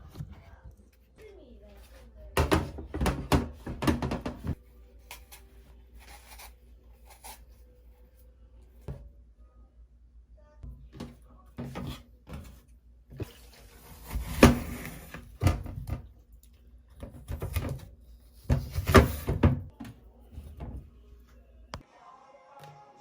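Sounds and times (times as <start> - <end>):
knocks and clunks: 2.4 - 4.6.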